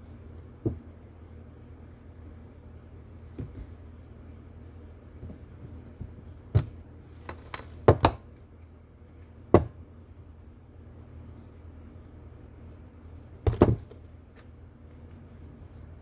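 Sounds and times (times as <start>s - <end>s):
small metal parts clinking: 6.6s - 7.8s.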